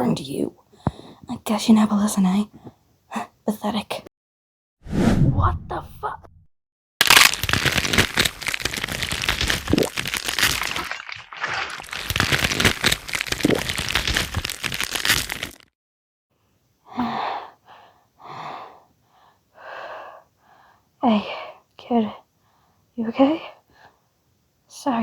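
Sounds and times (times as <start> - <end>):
heavy breaths or gasps: 0.7 - 1.3, 16.9 - 20.8
flesh ripping and bones cracking: 7.0 - 15.8.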